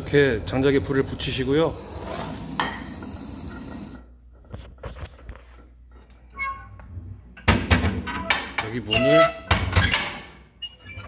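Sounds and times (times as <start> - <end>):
gas torch hissing: 0.0 - 4.1.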